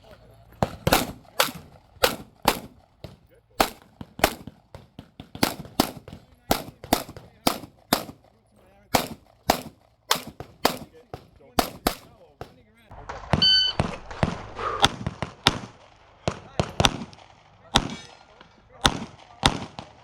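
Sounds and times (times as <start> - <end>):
pistol shots: 0.6 - 20.0.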